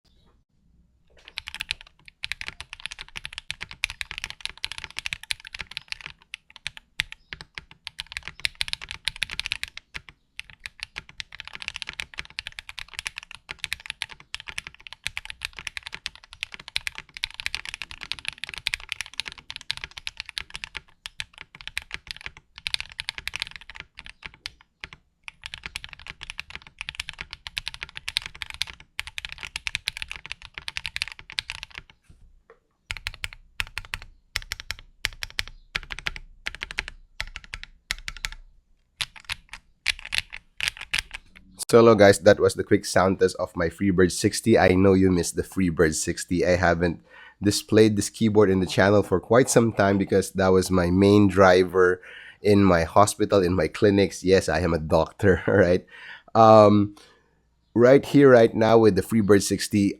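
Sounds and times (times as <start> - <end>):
mechanical keyboard typing: 1.2 - 32.0, 32.9 - 38.4, 39.0 - 41.6.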